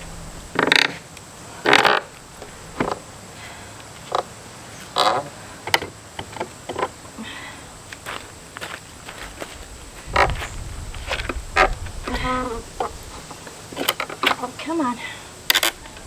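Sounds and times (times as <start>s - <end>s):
nails creaking out of wood: 1.6s - 3.0s, 4.9s - 7.0s, 15.5s - 16.0s.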